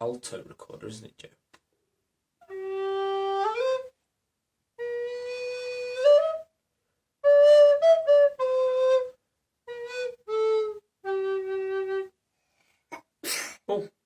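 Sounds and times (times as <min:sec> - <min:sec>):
recorder playing: 0:02.4 - 0:04.0, 0:04.8 - 0:06.5, 0:07.2 - 0:12.1.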